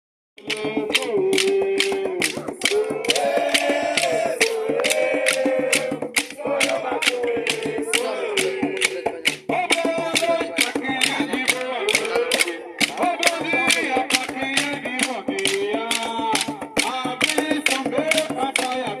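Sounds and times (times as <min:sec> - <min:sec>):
group singing a chant: 0:00.4 - 0:19.0
steady percussion strikes: 0:00.4 - 0:19.0.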